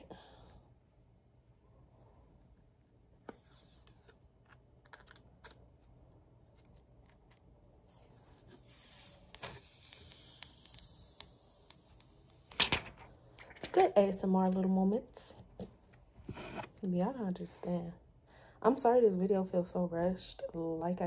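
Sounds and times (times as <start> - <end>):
soft rustling of packaging: 2.3 - 9.7.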